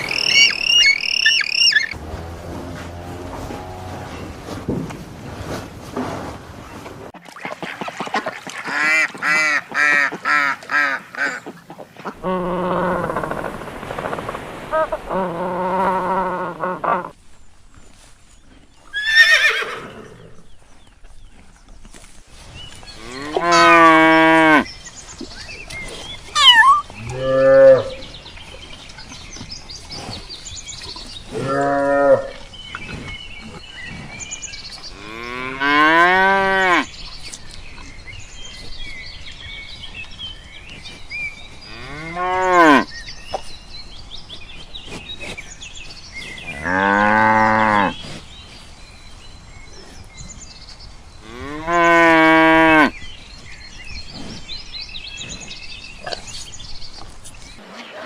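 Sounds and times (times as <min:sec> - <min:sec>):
cow mooing: 0:01.9 - 0:04.4.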